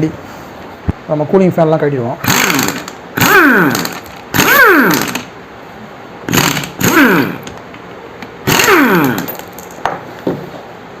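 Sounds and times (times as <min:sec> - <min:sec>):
impact wrench bursts: 0:02.2 - 0:05.4, 0:06.3 - 0:07.6, 0:08.4 - 0:09.6.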